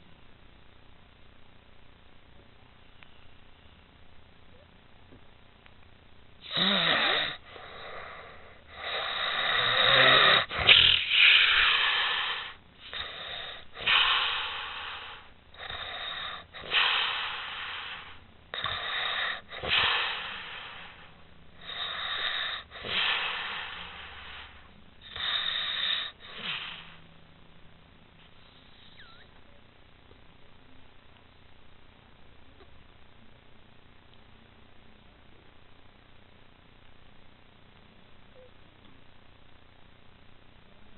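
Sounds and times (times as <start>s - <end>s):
woman snoring loudly: 6.4s - 21.0s, 21.6s - 26.9s.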